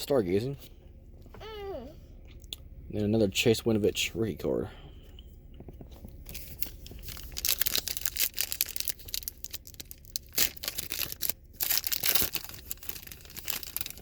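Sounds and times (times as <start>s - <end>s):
wrapper tearing and crinkling: 6.3s - 14.0s.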